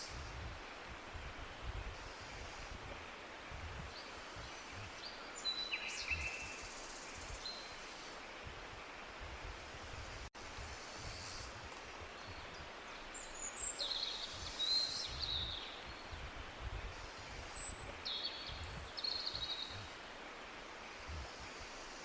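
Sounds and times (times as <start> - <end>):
birds chirping: 11.0 - 22.0.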